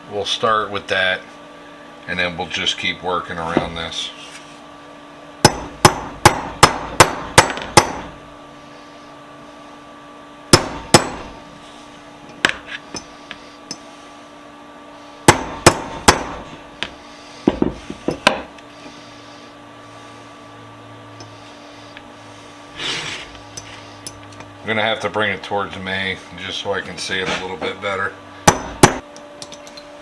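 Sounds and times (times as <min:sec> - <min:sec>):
hammer striking metal: 0:05.4 - 0:08.1, 0:10.6 - 0:11.4, 0:15.3 - 0:16.4, 0:28.4 - 0:29.0.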